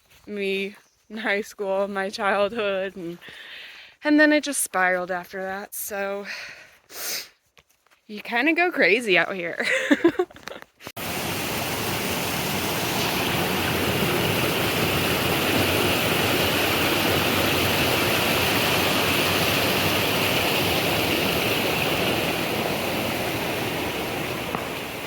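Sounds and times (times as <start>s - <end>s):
rushing creek water: 11.0s - 25.0s.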